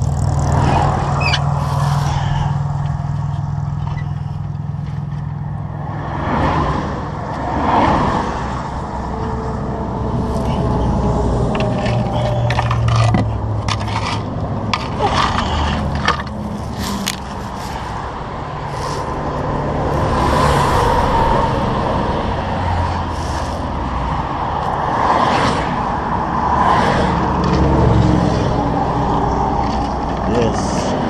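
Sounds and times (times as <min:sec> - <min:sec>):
highway traffic passing: 0:00.0 - 0:31.0
sharp knocks and scrapes: 0:10.2 - 0:18.1.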